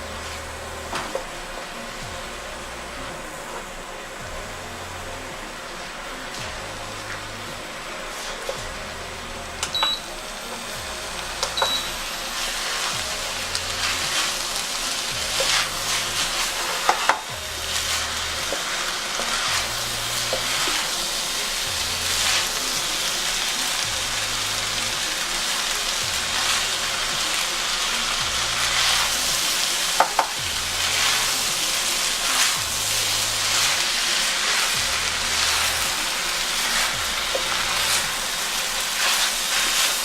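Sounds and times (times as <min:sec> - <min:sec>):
rice sizzling in a frying pan: 0:00.0 - 0:40.0
utensil scraping a pan: 0:05.0 - 0:23.8
utensil knocking against pan: 0:30.0 - 0:30.3.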